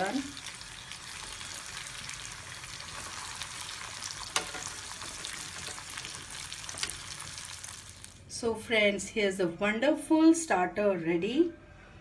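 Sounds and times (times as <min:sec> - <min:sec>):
food deep-frying in oil: 0:00.0 - 0:08.3.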